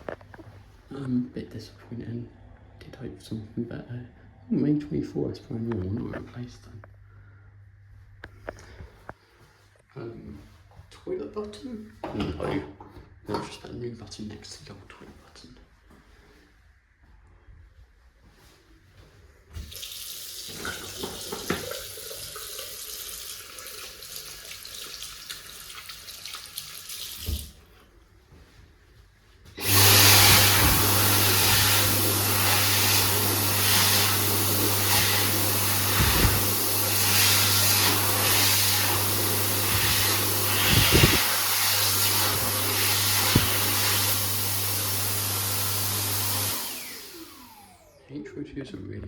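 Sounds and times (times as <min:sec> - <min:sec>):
hand dryer blowing: 0:19.6 - 0:24.6, 0:29.5 - 0:48.1
sink tap running: 0:19.6 - 0:27.6, 0:29.6 - 0:46.6.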